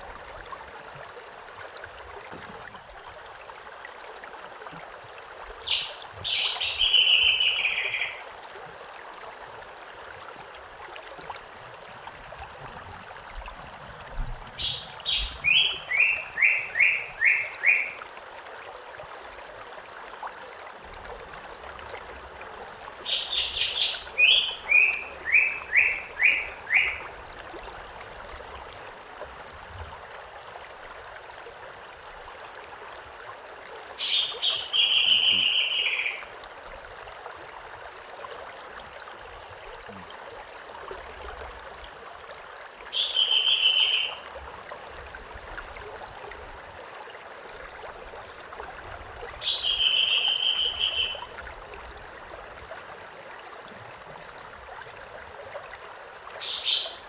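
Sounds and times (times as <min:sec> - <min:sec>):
stream water running: 0:00.0 - 0:57.0
songbird singing: 0:05.6 - 0:08.2, 0:14.6 - 0:18.0, 0:23.0 - 0:27.1, 0:34.0 - 0:36.3, 0:42.9 - 0:44.2, 0:49.4 - 0:51.3, 0:56.4 - 0:57.0.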